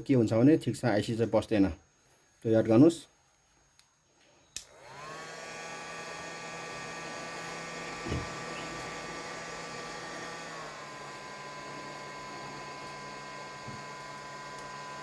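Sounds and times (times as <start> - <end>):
hot-air blower whine: 4.4 - 15.0.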